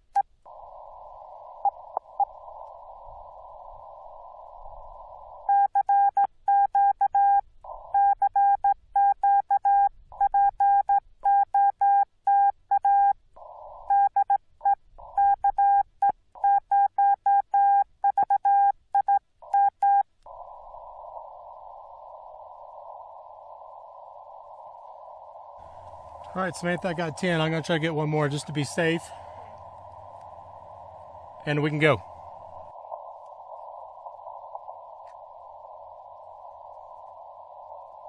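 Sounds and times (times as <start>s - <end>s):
receiver hiss: 0.0s - 9.0s, 13.1s - 16.5s, 19.4s - 38.0s
morse code beeps: 5.5s - 13.2s, 13.9s - 15.8s, 16.4s - 20.0s.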